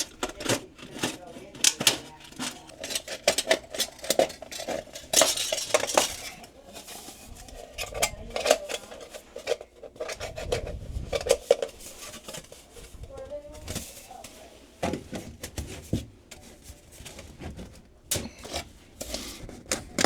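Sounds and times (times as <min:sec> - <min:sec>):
metal duct clanking and rattling: 0:00.0 - 0:06.5.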